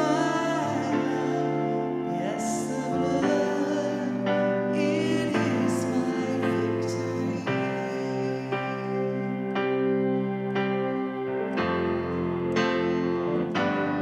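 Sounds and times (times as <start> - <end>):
faint singing: 0.0 - 10.0
keyboard chords: 0.0 - 14.0.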